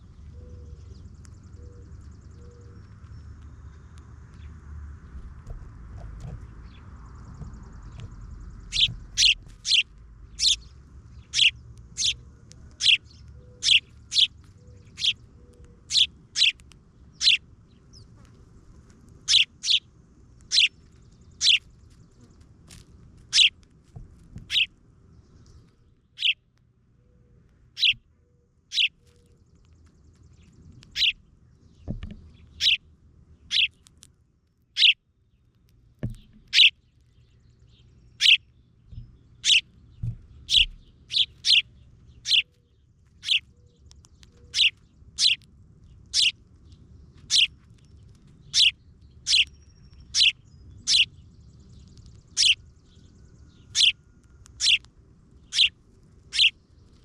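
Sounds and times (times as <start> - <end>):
bird chirping: 0.0 - 18.3, 18.9 - 22.4, 23.3 - 23.6, 24.3 - 34.0, 34.7 - 57.0
dull knocks: 7.3 - 9.2, 36.0 - 36.5, 40.0 - 40.3.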